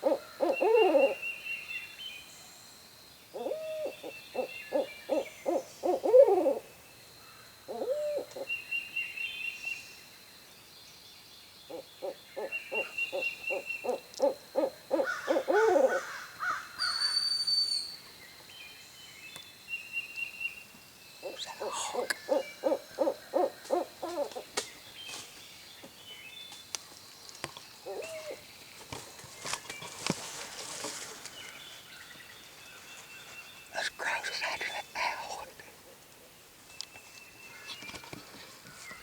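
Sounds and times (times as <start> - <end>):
owl hooting: 0.0 - 1.3, 3.3 - 6.7, 7.7 - 8.6, 11.7 - 17.4, 21.2 - 24.5, 27.8 - 28.4.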